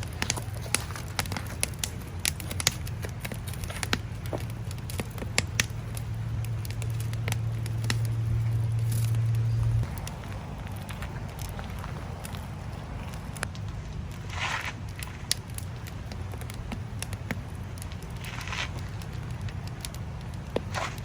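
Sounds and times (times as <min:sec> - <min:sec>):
fire crackling and popping: 0:00.0 - 0:21.0
low steady hum: 0:00.0 - 0:21.0.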